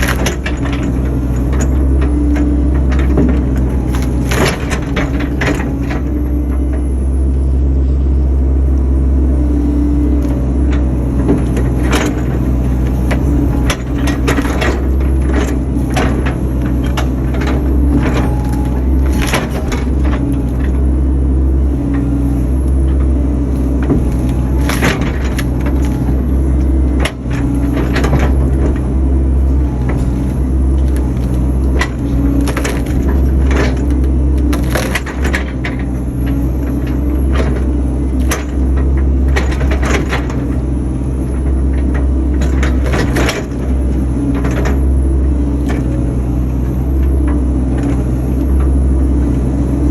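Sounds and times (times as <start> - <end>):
wood cracking and snapping: 0.0 - 6.1, 11.2 - 40.6
excavator engine running: 0.0 - 49.9.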